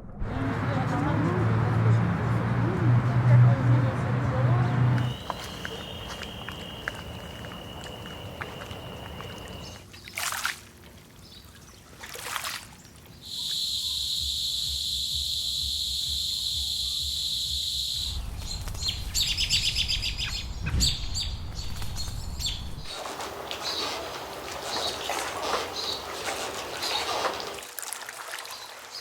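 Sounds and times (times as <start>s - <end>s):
birds chirping: 3.8s - 10.0s, 16.3s - 27.6s.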